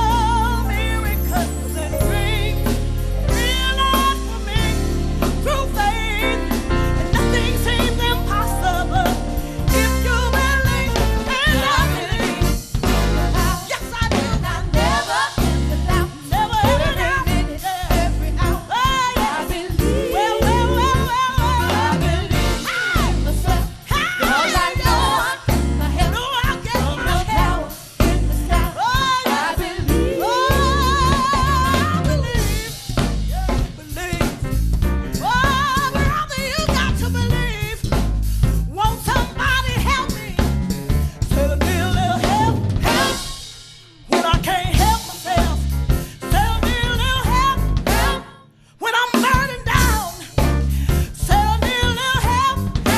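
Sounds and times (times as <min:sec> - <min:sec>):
woman singing with vibrato: 0:00.0 - 0:34.4, 0:41.3 - 0:45.7, 0:51.2 - 0:52.9
live gospel soul band: 0:00.0 - 0:52.9
snare drum backbeat: 0:41.4 - 0:43.4.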